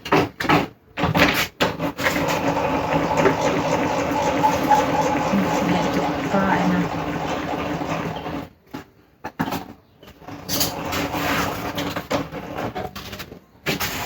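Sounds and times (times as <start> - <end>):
machine humming: 2.4 - 8.5.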